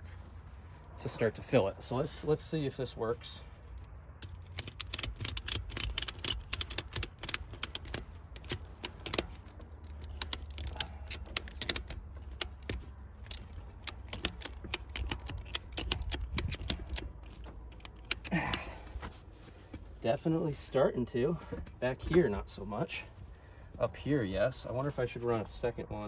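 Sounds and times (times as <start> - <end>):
ratchet strap clicking: 4.2 - 19.0.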